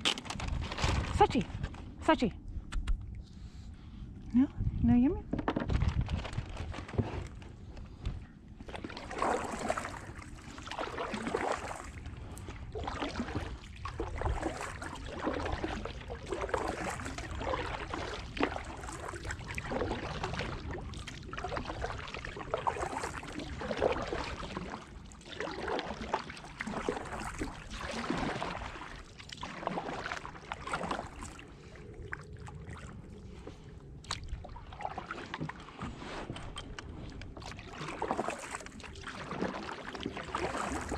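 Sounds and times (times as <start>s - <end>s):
steady low rumble: 0.4s - 10.5s
kayak paddle swishing through water: 6.2s - 40.9s.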